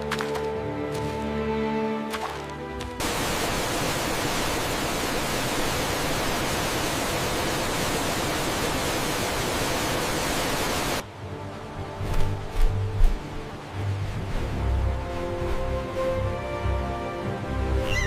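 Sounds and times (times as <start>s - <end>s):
soft music: 0.0s - 3.0s, 11.0s - 18.0s
waterfall rushing: 2.9s - 18.0s.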